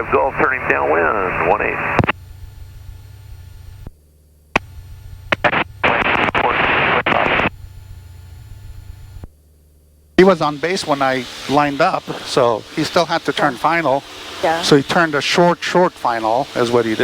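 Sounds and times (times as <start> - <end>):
burst of radio static: 0.0 - 2.1, 5.3 - 7.6, 10.2 - 17.0
low steady hum: 0.0 - 17.0
sharp radio clicks: 5.3 - 7.5.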